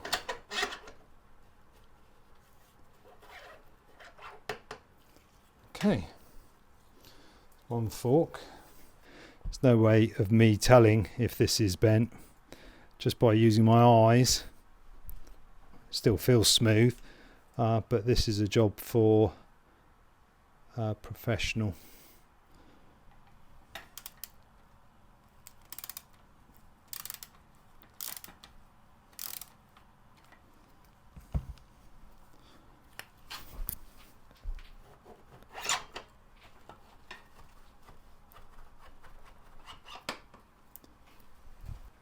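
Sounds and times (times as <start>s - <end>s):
metal fork leg rubbing and scraping: 34.9s - 36.0s, 39.2s - 40.1s.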